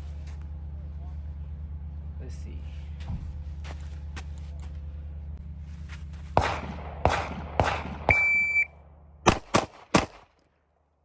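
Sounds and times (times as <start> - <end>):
rapid pistol shots: 6.4 - 8.3, 9.3 - 10.4
gunshots: 6.4 - 8.4, 9.3 - 10.3
shot timer beep: 8.1 - 8.8.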